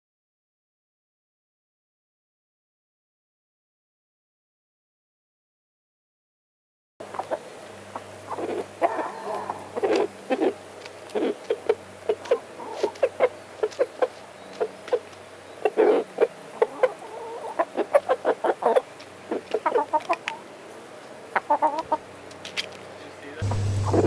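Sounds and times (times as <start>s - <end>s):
rooster clucking rapidly: 7.1s - 20.4s.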